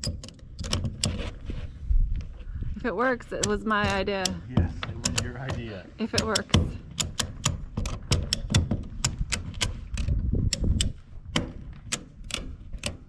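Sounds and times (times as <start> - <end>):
ratchet clicking: 6.1 - 11.0.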